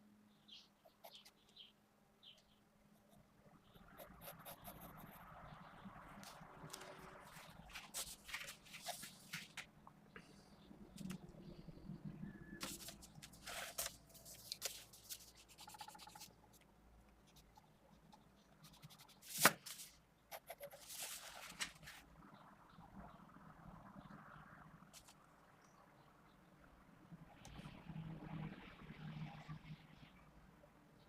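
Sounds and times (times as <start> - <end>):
pencil scratching on paper: 3.8 - 5.3, 14.6 - 16.3, 17.3 - 19.4, 20.3 - 21.2.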